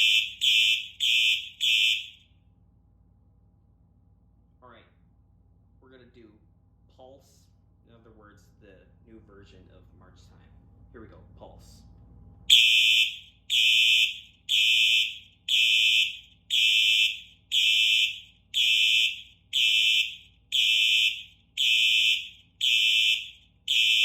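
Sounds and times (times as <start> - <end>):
fire alarm horn pulsing: 0.0 - 2.3, 12.5 - 24.0.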